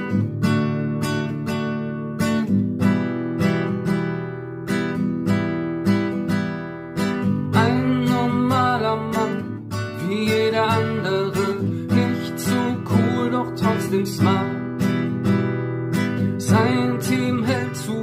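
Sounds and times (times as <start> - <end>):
acoustic guitar strumming: 0.0 - 18.0
person singing: 7.6 - 15.0, 16.3 - 18.0.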